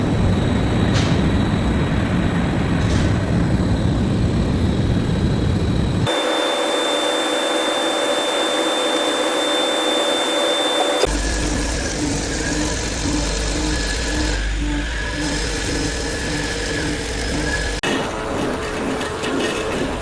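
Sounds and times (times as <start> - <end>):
hiss with high whine: 6.1 - 11.1
hum: 6.1 - 11.1.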